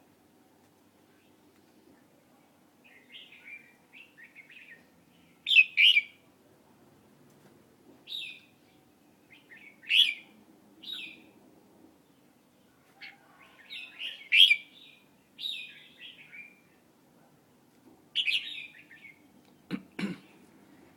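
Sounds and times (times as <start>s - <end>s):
bird chirping: 2.8s - 6.2s, 8.1s - 10.2s, 18.2s - 19.7s.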